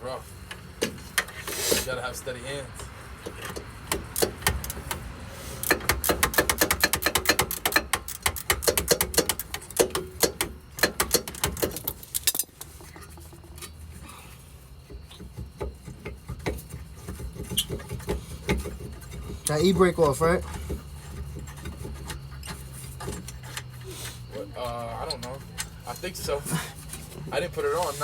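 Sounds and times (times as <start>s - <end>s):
ratchet wrench clicking: 3.2s - 12.8s.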